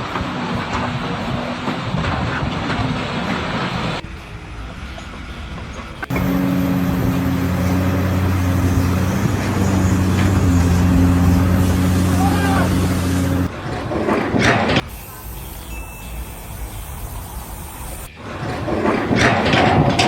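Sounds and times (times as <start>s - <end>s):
machine noise: 0.0s - 15.4s
engine running steadily: 0.1s - 14.8s.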